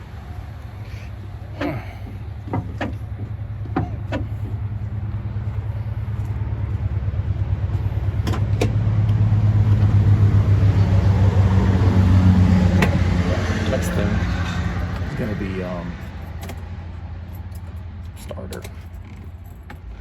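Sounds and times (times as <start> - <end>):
vehicle engine humming: 0.0 - 20.0.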